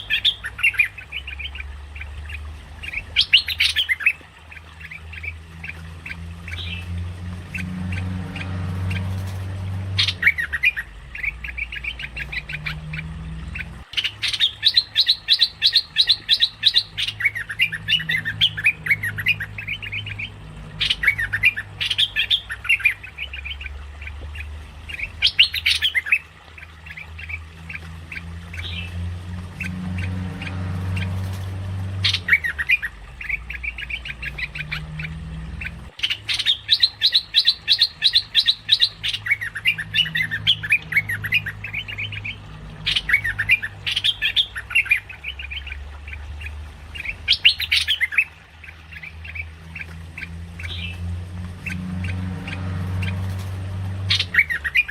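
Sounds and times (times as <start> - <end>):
bulbul chattering call: 7.5 - 51.0.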